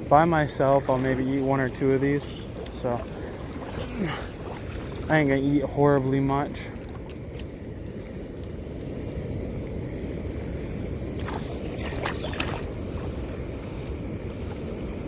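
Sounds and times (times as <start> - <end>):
water rushing through spillway: 0.0 - 6.7.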